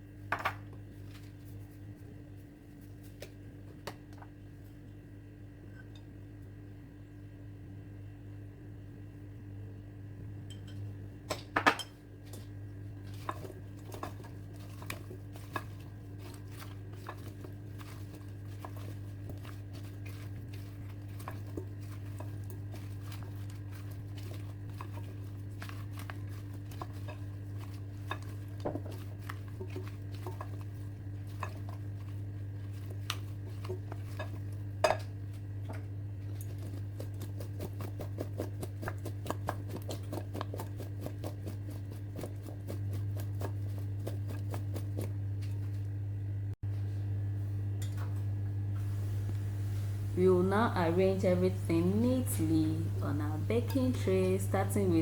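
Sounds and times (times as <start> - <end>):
steady low hum: 0.0 - 55.0
utensil scraping and knocking bowl: 11.6 - 45.1.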